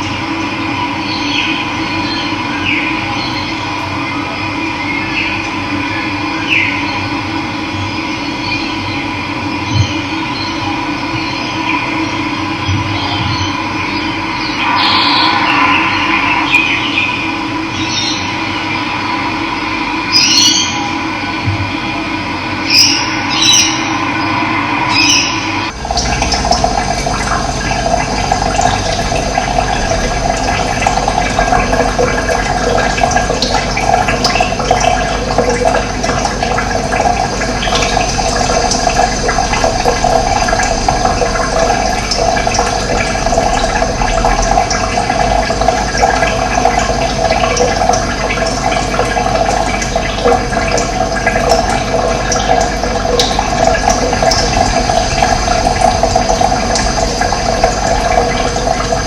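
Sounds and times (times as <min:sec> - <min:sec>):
running water rushing: 0:14.2 - 0:20.8, 0:22.7 - 0:59.0.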